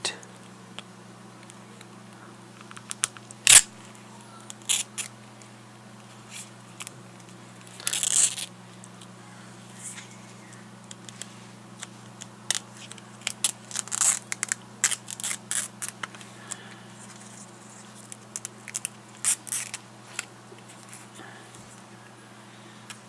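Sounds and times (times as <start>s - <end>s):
adhesive foam peeling crackle: 10.9s - 16.2s, 17.0s - 21.1s.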